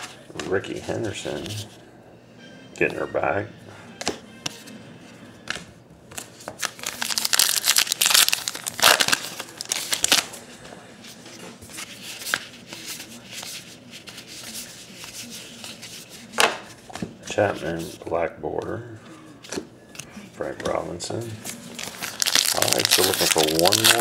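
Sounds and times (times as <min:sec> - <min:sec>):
wrapper crinkling and tearing: 0:06.6 - 0:10.3, 0:21.8 - 0:24.0.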